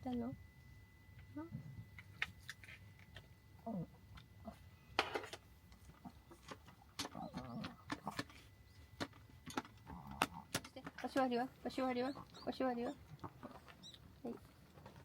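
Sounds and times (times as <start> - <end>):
small dog whimpering: 7.1 - 8.2.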